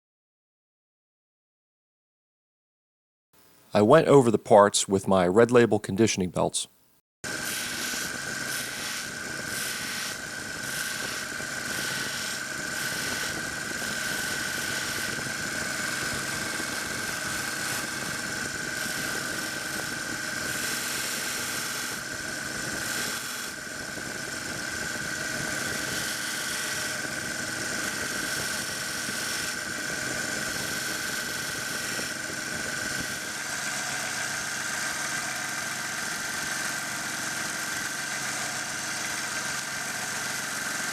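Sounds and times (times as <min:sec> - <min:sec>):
belt sander whine: 0:07.3 - 0:40.9
metal parts hissing against belt: 0:07.4 - 0:15.1.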